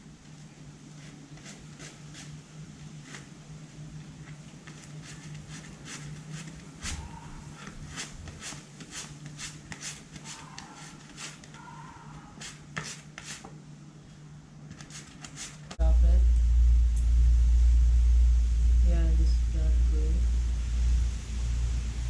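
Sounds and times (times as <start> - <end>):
low steady hum: 13.5 - 22.0.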